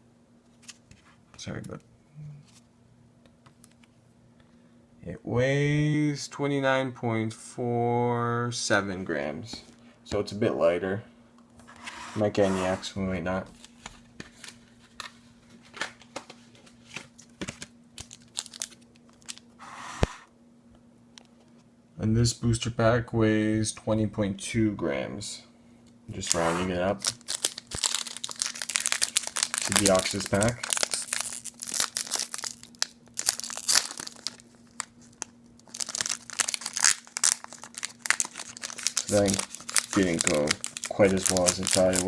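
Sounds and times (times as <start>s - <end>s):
foil wrapper crinkling and tearing: 18.0s - 19.6s, 26.2s - 42.0s.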